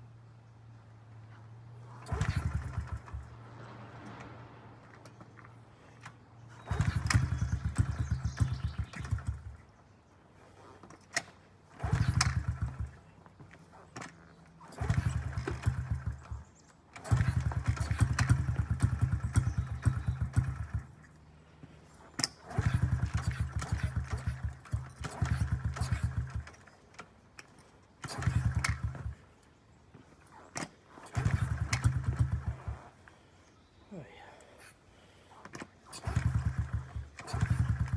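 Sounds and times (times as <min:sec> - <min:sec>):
small engine sputtering: 0:01.3 - 0:34.0, 0:34.6 - 0:37.9
sharp clicks: 0:22.0 - 0:29.1.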